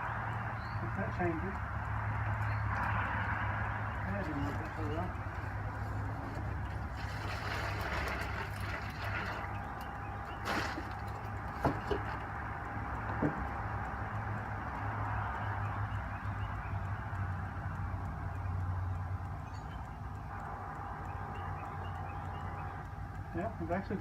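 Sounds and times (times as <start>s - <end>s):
light clicks and knocks: 0.6s - 16.4s.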